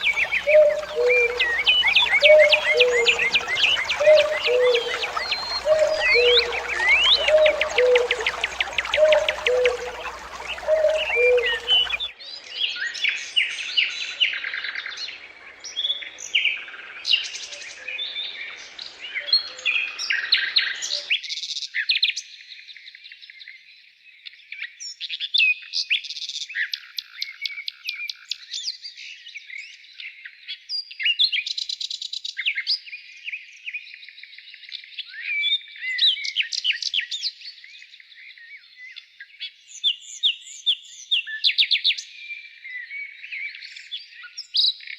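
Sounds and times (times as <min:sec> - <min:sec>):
songbirds twittering and trilling: 0:00.0 - 0:21.1.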